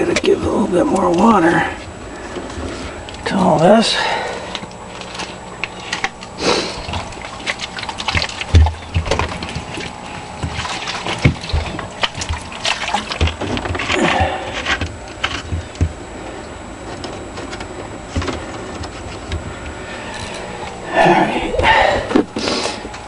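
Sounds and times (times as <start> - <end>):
water pouring and sloshing: 4.1 - 19.3
knocks and clatter of handling: 16.9 - 19.4.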